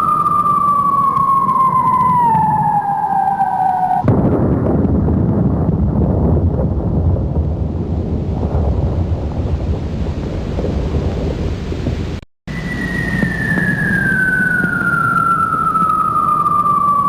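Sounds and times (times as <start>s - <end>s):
falling bomb whistle: 0.0s - 4.1s, 12.5s - 17.0s
explosion rumble: 3.9s - 17.0s.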